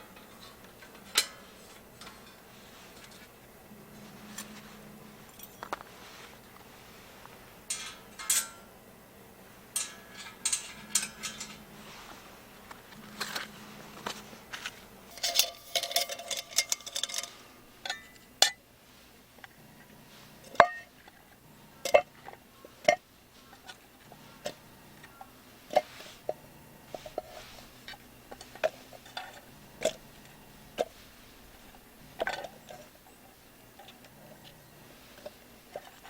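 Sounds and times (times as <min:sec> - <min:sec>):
metal items clinking and knocking: 0:07.7 - 0:08.7, 0:09.7 - 0:11.7, 0:13.0 - 0:18.6
rattling clinks: 0:09.7 - 0:11.6, 0:15.1 - 0:18.6.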